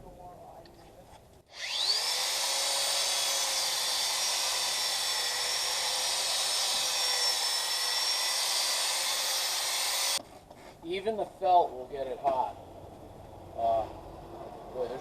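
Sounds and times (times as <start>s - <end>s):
electric polisher whine: 1.5s - 10.2s.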